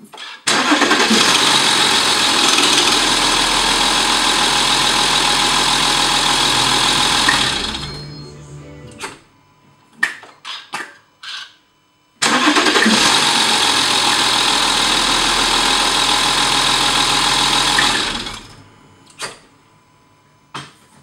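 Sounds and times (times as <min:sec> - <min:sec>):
diesel engine starting and running: 0:00.5 - 0:09.4, 0:12.2 - 0:19.6.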